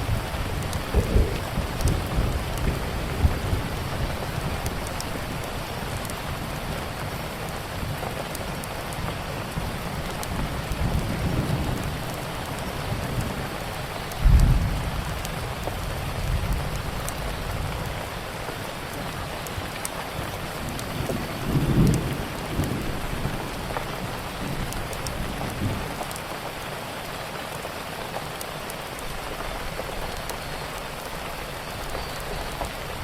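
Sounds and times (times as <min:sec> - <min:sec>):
low rumble of thunder: 0:00.0 - 0:08.6, 0:09.4 - 0:18.2, 0:20.2 - 0:26.2
steady rain: 0:00.0 - 0:33.0
wood fire crackling: 0:00.0 - 0:33.0.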